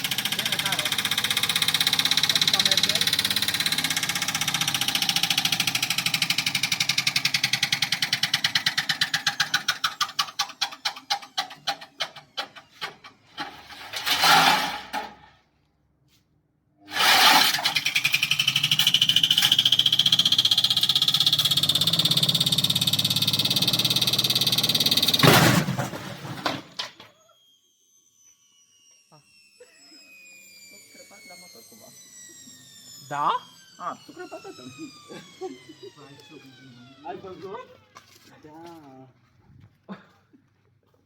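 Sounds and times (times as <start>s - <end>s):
washing machine rattling and whining: 0.0s - 15.2s.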